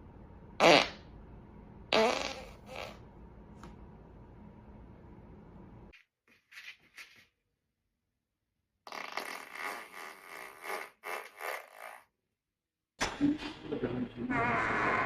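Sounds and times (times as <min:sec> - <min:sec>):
person farting: 0:00.6 - 0:01.0, 0:01.9 - 0:03.0, 0:08.8 - 0:12.1.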